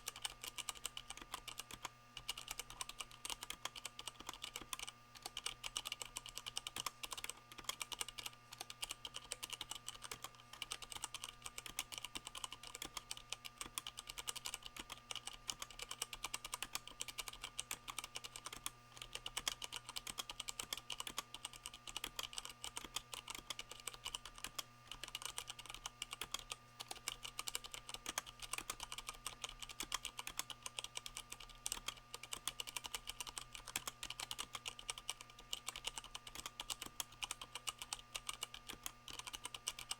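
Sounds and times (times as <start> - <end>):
faint steady hum: 0.0 - 39.9
fast mechanical keyboard typing: 0.0 - 39.9.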